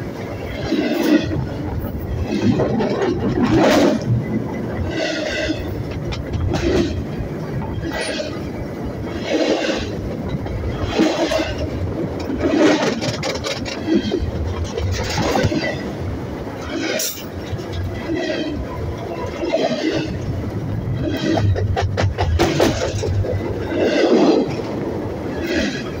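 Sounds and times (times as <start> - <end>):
train rumbling past: 0.0 - 26.0
rhythmic wheel clatter: 0.6 - 16.0.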